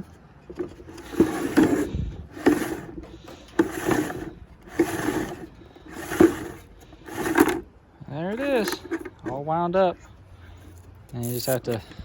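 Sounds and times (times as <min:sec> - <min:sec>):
cable reel cranked by hand: 0:00.9 - 0:07.6.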